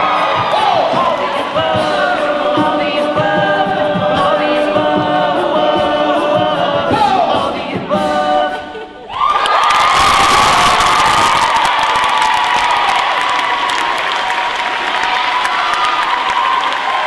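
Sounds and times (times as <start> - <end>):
crowd cheering and applause: 0.0 - 1.8, 9.1 - 17.0
vocal percussion beat: 0.0 - 9.1
a cappella group singing: 0.0 - 9.2.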